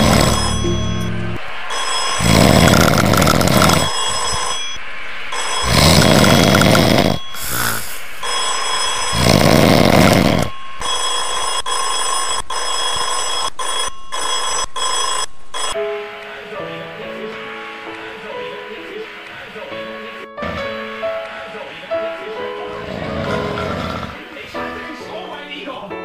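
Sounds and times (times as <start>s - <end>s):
loud snoring: 0.0s - 0.9s, 2.1s - 4.5s, 5.6s - 8.0s, 9.0s - 10.6s, 20.4s - 20.8s, 22.7s - 24.3s
music: 0.0s - 2.6s, 15.8s - 26.0s
bell ringing: 0.0s - 4.8s.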